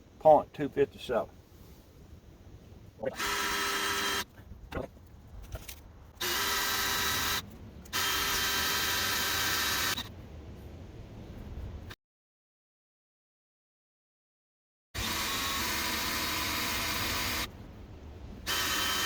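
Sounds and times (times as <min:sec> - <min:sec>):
electric drill boring steel: 0:03.2 - 0:04.3, 0:06.2 - 0:10.1, 0:15.0 - 0:17.5, 0:18.5 - 0:19.0.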